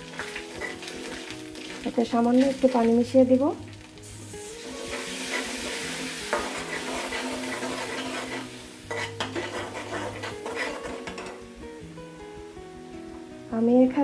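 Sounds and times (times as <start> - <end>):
spices sizzling in oil: 0.0 - 14.0
spatula scraping pan: 0.1 - 1.8, 4.6 - 11.4.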